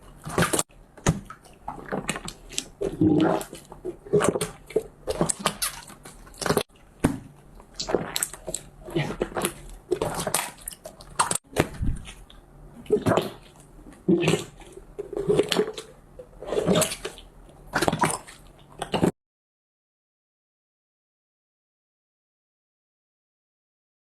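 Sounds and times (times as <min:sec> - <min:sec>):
slime squishing by hand: 0:00.0 - 0:19.1.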